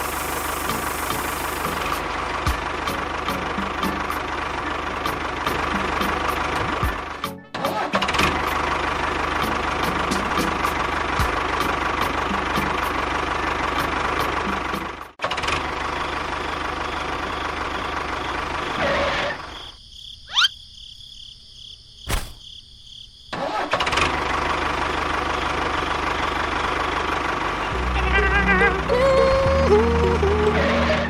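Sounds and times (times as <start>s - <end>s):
sharp click: 22.1s - 22.4s.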